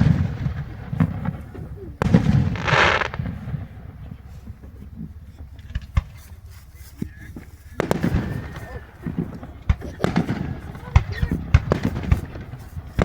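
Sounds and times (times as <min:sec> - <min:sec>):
fireworks bang: 0:00.0 - 0:05.0, 0:07.8 - 0:13.0
hissing crackle: 0:00.0 - 0:13.0
thuds and pops: 0:04.5 - 0:06.4.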